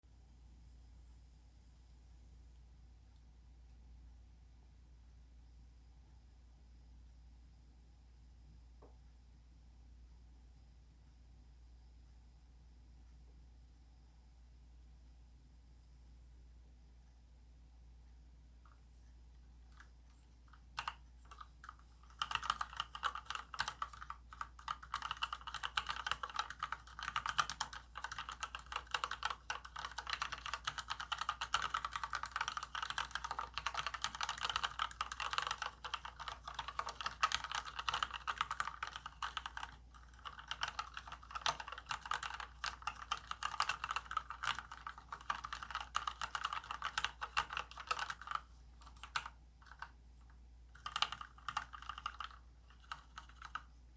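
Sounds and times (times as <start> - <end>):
mechanical keyboard typing: 19.7 - 49.9, 50.7 - 53.7.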